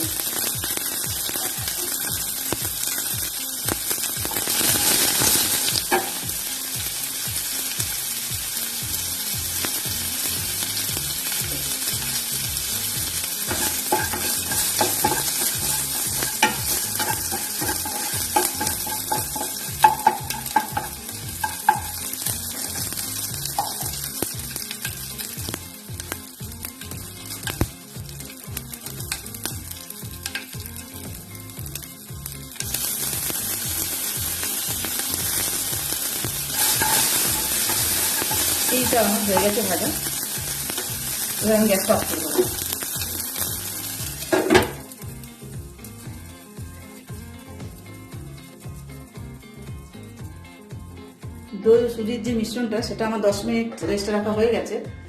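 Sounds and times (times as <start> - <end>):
spices sizzling in hot oil: 0.0 - 51.7
spoon scraping and clicking on pan: 13.5 - 22.1, 36.5 - 39.6.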